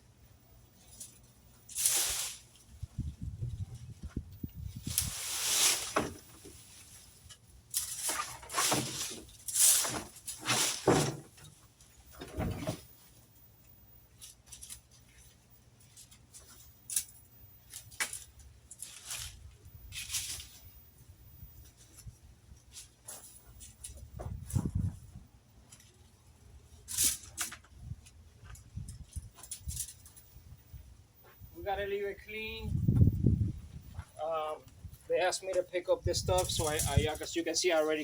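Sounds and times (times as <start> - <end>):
dry leaves raked and rustling: 0.7 - 4.0, 4.6 - 11.2, 14.2 - 20.8, 35.2 - 38.0.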